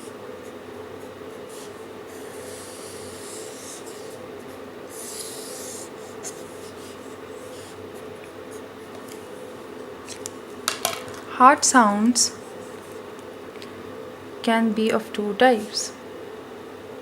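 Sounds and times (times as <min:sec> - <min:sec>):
steady electrical hum: 0:00.0 - 0:17.0
pen scratching on paper: 0:01.0 - 0:08.7.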